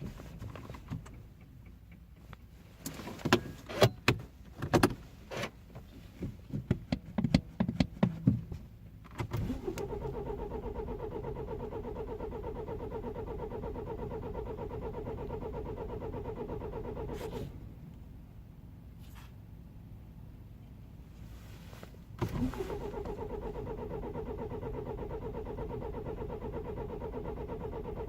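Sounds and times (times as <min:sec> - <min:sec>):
engine starter cranking: 0:09.1 - 0:17.6, 0:22.2 - 0:28.0.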